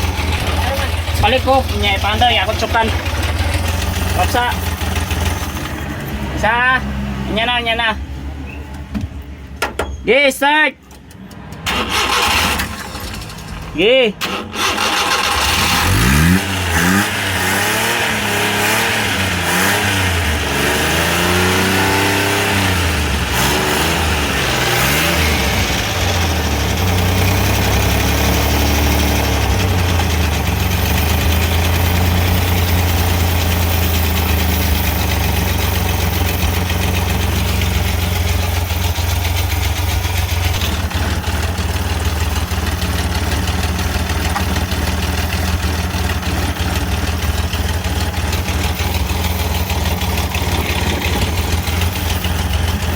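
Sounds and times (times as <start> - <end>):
engine revving then idling: 14.2 - 52.9.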